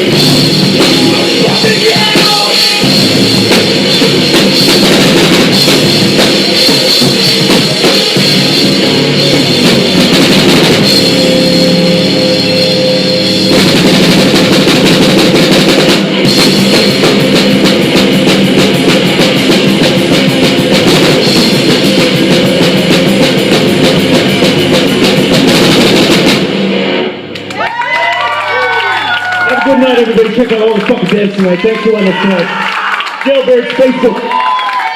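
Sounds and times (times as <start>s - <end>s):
live rock band playing: 0.0s - 27.5s
drum kit rapid hits: 0.0s - 27.8s.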